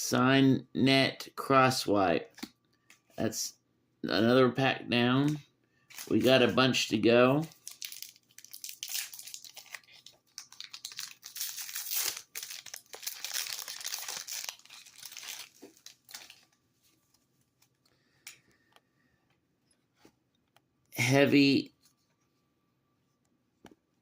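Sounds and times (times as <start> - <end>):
wrapper crinkling and tearing: 5.9 - 6.3, 7.5 - 16.6.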